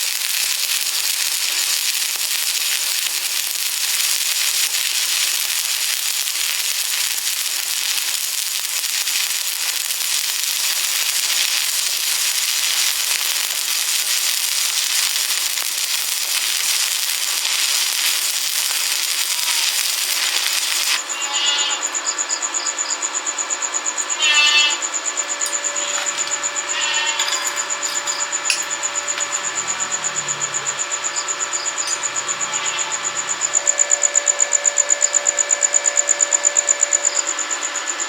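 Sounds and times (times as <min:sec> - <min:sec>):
welding arc crackling: 0:00.0 - 0:21.2, 0:24.7 - 0:38.0
pulsing high-pitched whine: 0:24.8 - 0:38.0.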